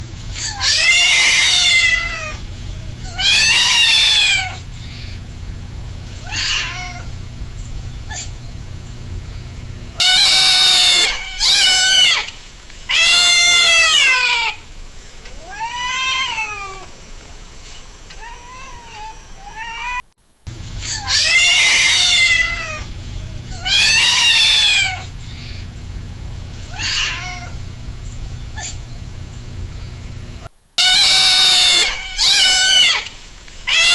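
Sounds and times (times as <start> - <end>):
cat screaming: 0.4 - 2.4, 3.0 - 4.6, 6.2 - 7.1, 10.0 - 12.3, 12.9 - 14.6, 15.4 - 16.9, 20.9 - 22.9, 23.5 - 25.1, 26.7 - 27.6, 30.8 - 33.9.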